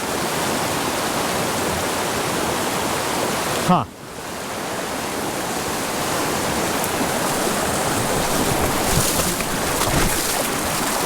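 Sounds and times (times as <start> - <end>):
creek flowing over rocks: 0.0 - 11.0.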